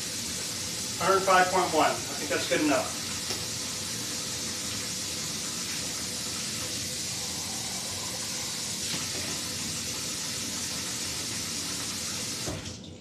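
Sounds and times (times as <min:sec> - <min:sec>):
tap water running: 0:00.0 - 0:13.0.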